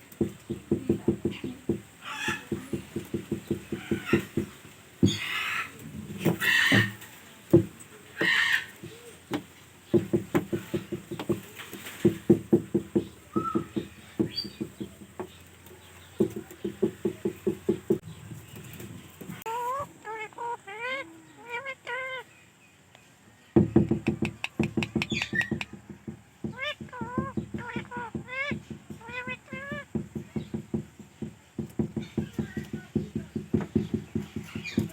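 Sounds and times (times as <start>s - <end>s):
parrot clucking: 0.1s - 22.2s, 24.0s - 25.8s, 26.4s - 29.9s
parrot whistled chirps: 13.3s - 13.7s.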